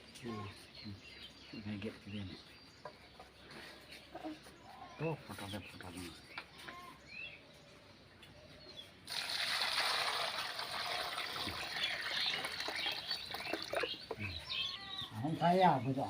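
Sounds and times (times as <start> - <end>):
water splashing in a stream: 9.1 - 14.1.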